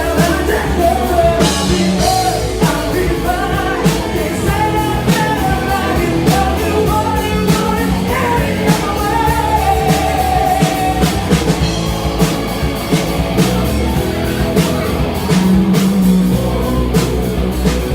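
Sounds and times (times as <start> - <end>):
person singing: 0.0 - 11.9
drum hits: 0.0 - 17.9
live rock band playing: 0.0 - 17.9.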